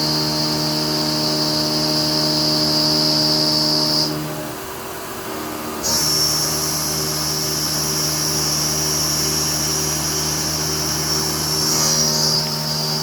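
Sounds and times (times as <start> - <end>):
low machine hum: 0.0 - 13.0
high-pitched whine: 5.8 - 13.0.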